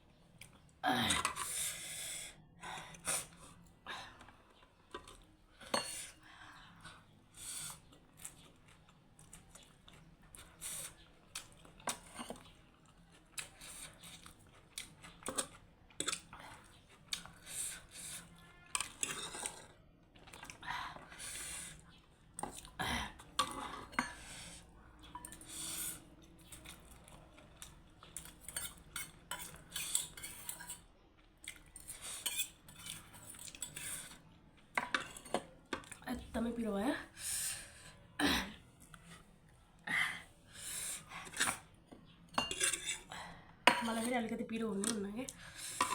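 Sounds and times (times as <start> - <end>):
eating sounds: 7.0 - 30.2
cutlery clinking on a dish: 18.7 - 19.8, 28.1 - 30.8, 31.8 - 34.1, 34.8 - 35.9, 41.3 - 43.1, 43.7 - 44.1.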